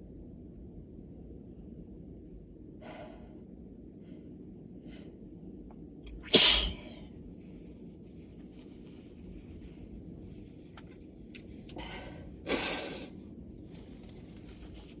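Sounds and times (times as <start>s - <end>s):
faint breaths: 2.8s - 5.4s, 11.6s - 13.2s
person sneezing: 6.2s - 6.9s, 12.5s - 13.1s
catching inhale: 11.8s - 13.1s.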